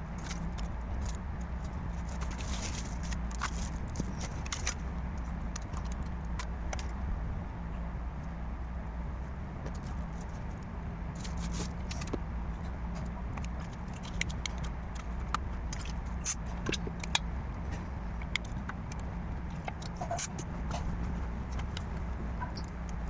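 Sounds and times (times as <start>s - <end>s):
steady low hum: 0.0s - 23.0s
small tools clicking and tapping: 13.0s - 23.0s.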